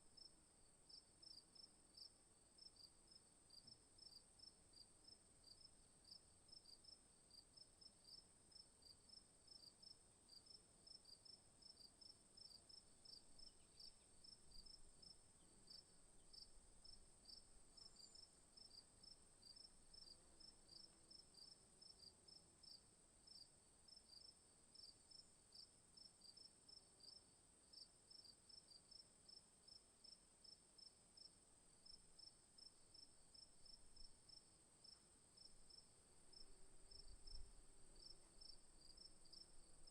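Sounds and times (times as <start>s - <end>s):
crickets chirping: 8.1s - 39.9s.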